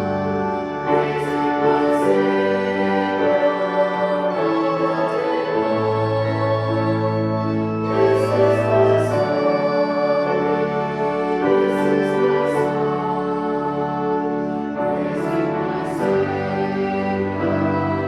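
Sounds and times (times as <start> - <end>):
hymn singing: 0.0 - 18.0
organ chords: 0.0 - 18.0.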